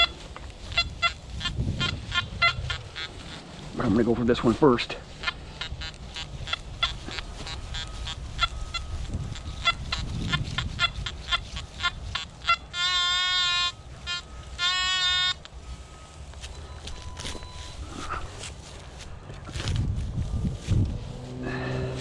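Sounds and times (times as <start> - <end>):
metal detector buzzy tones: 0.0 - 4.4, 5.2 - 18.2.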